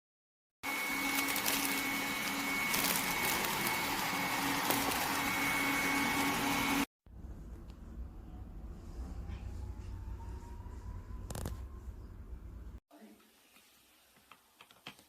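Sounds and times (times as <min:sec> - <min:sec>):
small machine whirring: 0:00.6 - 0:06.9.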